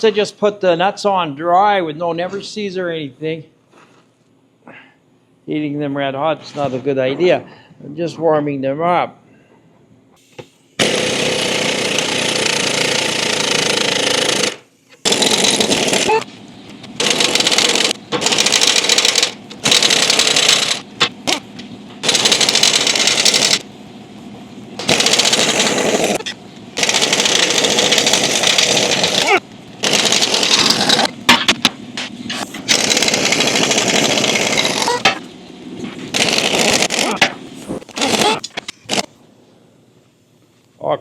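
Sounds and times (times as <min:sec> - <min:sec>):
impact wrench hammering: 0:10.8 - 0:16.2, 0:17.0 - 0:23.6, 0:24.8 - 0:31.8, 0:32.6 - 0:35.3, 0:36.1 - 0:37.4.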